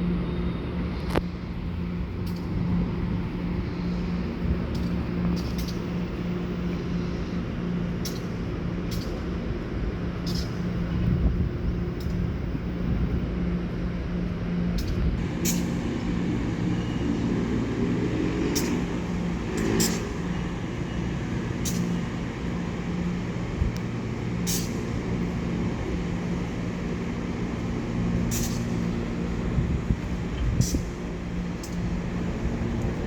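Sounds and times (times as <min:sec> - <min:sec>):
train low hum: 0:00.0 - 0:33.0
motor whine: 0:15.2 - 0:33.0.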